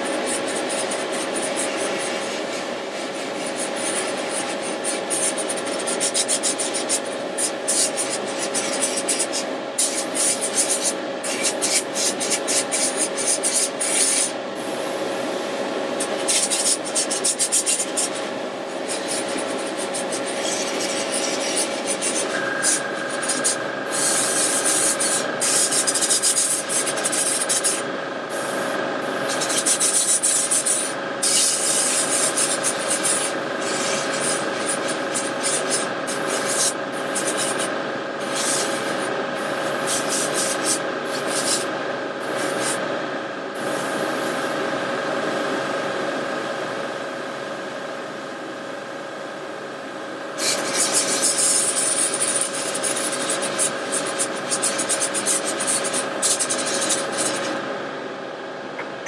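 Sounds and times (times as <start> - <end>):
steady hum: 0.0 - 59.0
airbrush spraying hiss: 9.8 - 12.1, 13.8 - 15.6, 28.3 - 30.1, 38.2 - 42.8.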